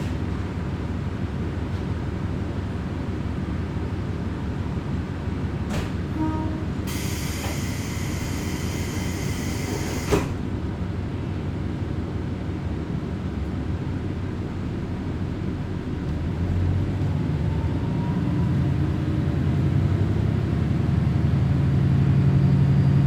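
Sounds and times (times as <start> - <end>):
diesel railcar rumbling: 0.0 - 23.0.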